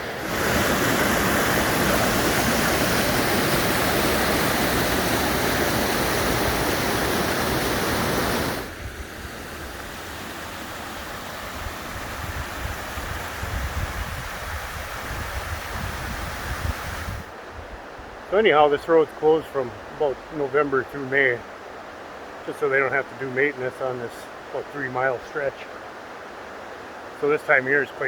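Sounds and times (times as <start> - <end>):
water rushing over rocks: 0.0 - 17.3.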